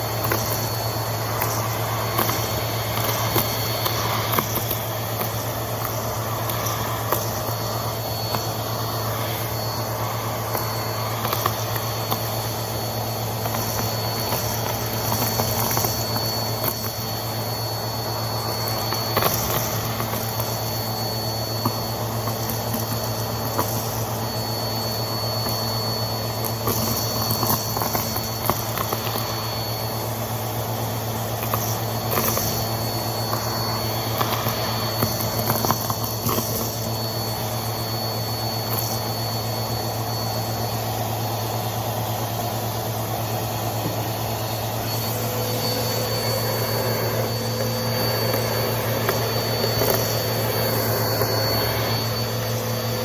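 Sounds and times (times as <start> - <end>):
vacuum cleaner running: 0.0 - 53.0.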